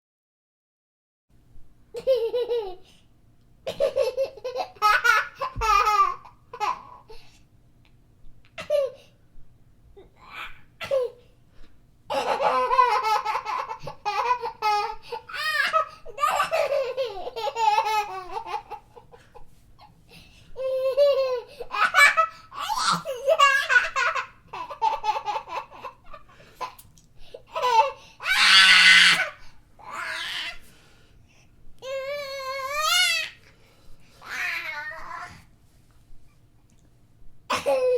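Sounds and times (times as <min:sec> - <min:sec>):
young child giggling: 0:02.0 - 0:02.9, 0:03.7 - 0:07.1, 0:12.1 - 0:20.0.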